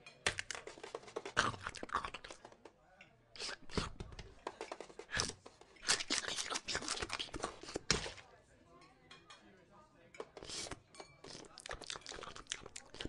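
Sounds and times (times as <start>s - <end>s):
crunchy chewing and biting: 10.4s - 13.0s.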